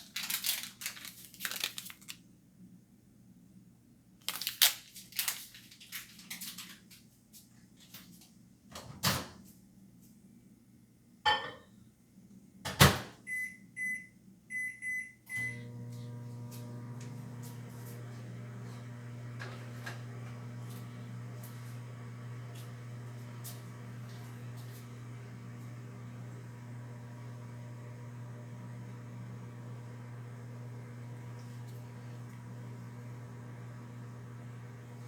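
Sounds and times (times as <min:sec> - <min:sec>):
microwave humming: 0:12.7 - 0:35.0.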